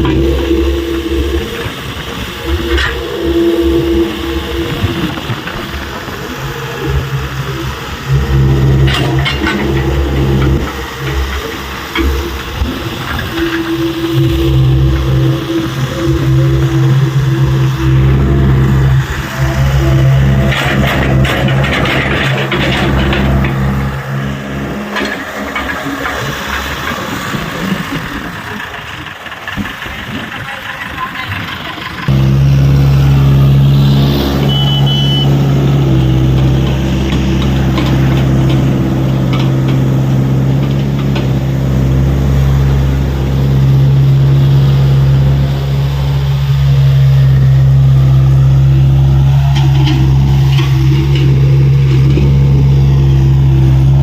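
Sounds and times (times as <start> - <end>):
diesel engine running: 0.0 - 54.0
clattering: 19.8 - 27.8.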